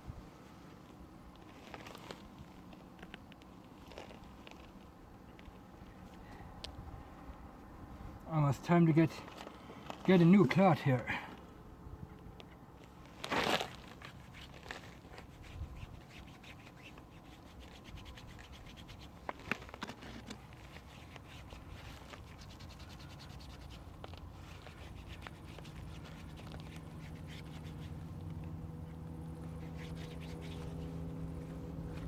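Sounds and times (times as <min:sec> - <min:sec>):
cloth scrubbing wheel rim: 0:14.1 - 0:19.4, 0:20.4 - 0:28.2
low hum: 0:22.2 - 0:32.0.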